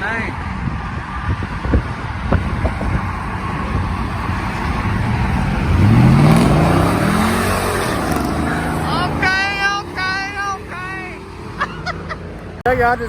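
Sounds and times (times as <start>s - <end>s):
truck engine accelerating: 0.0s - 13.0s.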